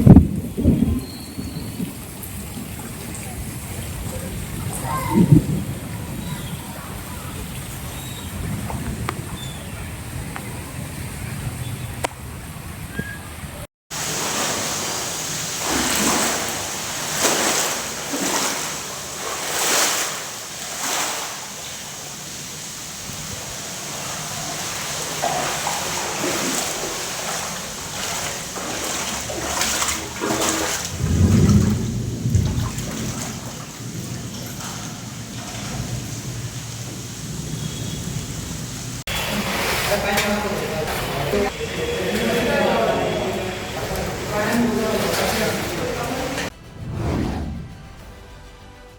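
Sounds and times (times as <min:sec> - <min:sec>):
rainwater splashing and sloshing: 0:00.0 - 0:46.7
low rumble: 0:30.9 - 0:34.8, 0:46.5 - 0:48.9.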